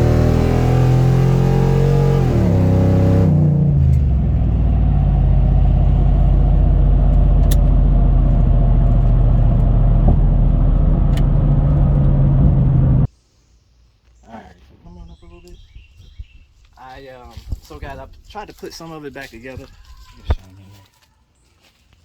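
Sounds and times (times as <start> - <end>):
vehicle engine revving and idling: 0.0 - 13.1.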